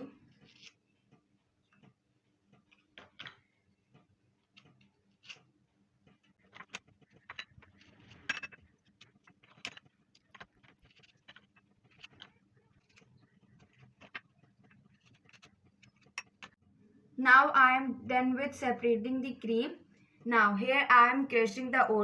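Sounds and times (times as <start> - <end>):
cookie clicks and scrapes: 0.1 - 16.6.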